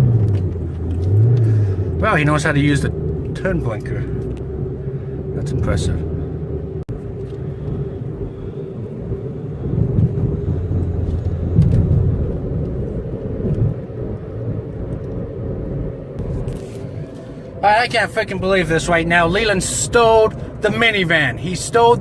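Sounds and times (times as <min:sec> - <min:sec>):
car road and engine rumble: 0:00.0 - 0:22.0.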